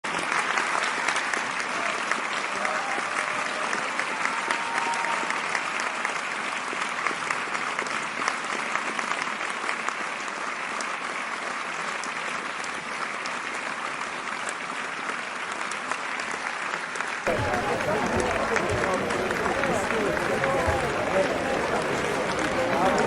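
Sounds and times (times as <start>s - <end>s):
crowd applause: 0.0s - 23.0s.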